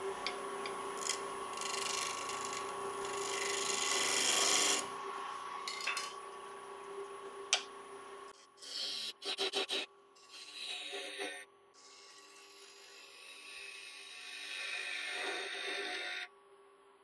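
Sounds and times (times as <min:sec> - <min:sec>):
lathe motor whine: 0:01.0 - 0:05.5.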